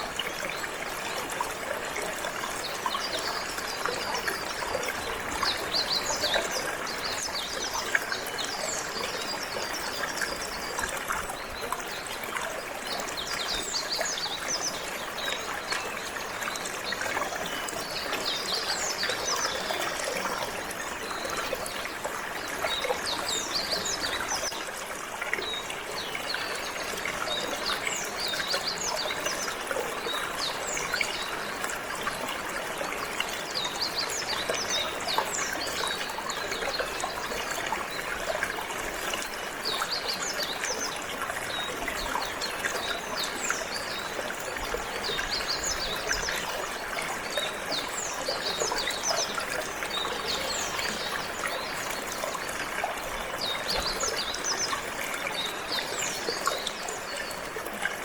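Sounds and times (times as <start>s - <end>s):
water trickling: 0.0s - 58.0s.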